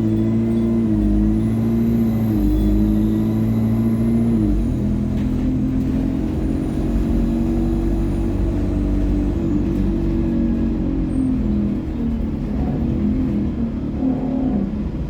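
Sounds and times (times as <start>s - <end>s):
bus engine rumble: 0.0s - 15.0s
bus gearbox and turbo whine: 0.0s - 15.0s.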